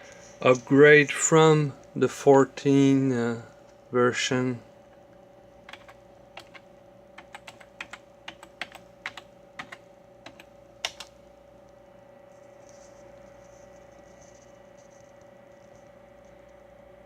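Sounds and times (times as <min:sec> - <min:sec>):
typing on computer keyboard: 0:05.7 - 0:06.6, 0:07.2 - 0:11.1.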